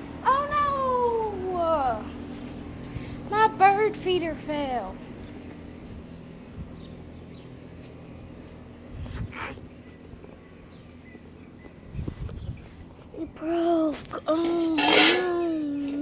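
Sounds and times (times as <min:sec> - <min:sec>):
high-pitched insect chorus: 0:00.0 - 0:13.4.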